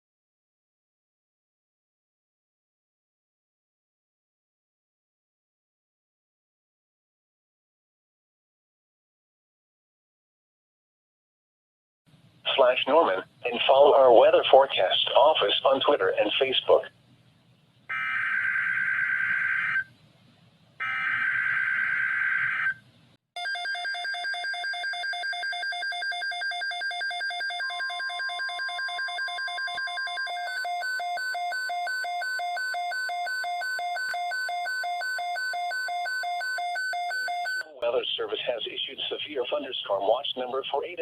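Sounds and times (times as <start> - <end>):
pulsing electronic alarm beeping: 23.4 - 37.7
steady warning tone: 24.6 - 37.8.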